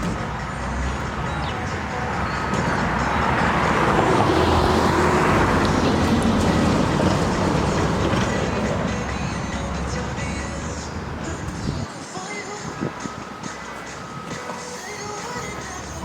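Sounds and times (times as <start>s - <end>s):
vehicle passing by: 0.0s - 11.9s.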